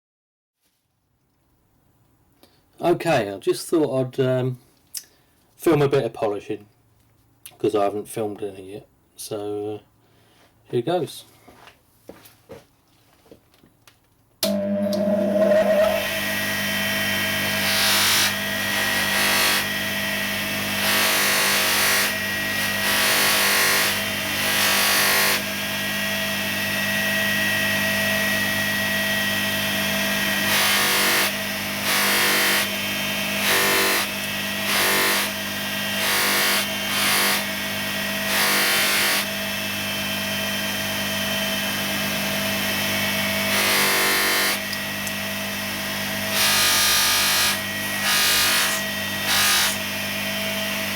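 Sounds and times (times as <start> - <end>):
bench grinder motor hum: 14.4 - 50.9.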